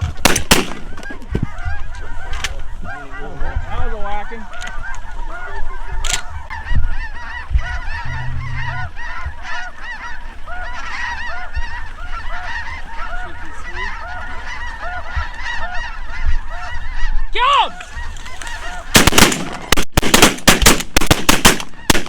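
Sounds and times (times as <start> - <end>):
geese honking: 0.0 - 19.8
dull low thumps: 5.8 - 9.7.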